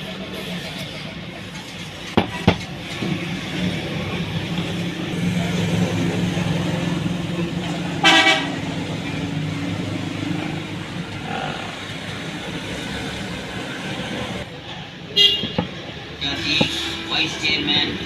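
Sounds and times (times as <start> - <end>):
street traffic engine hum: 0.0 - 18.0
vehicle horn toot: 8.0 - 8.6, 15.2 - 15.6.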